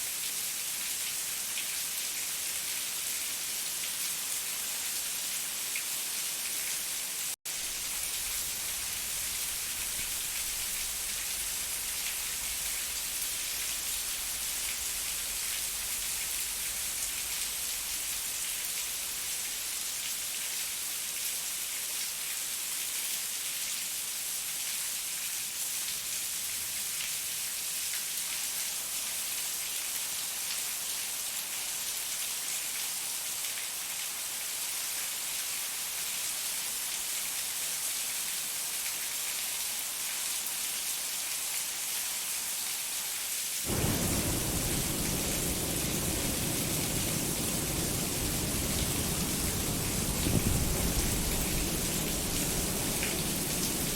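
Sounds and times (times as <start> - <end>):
steady rain falling: 0.0 - 53.9
low rumble: 43.7 - 53.9.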